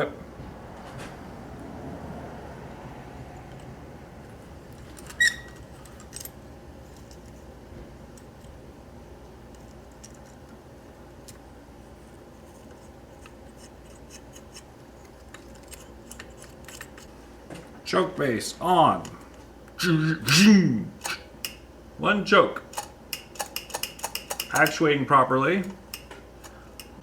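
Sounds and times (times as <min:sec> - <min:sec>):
low background hum: 0:00.0 - 0:27.0
metal parts clinking: 0:04.7 - 0:07.4, 0:22.7 - 0:24.8.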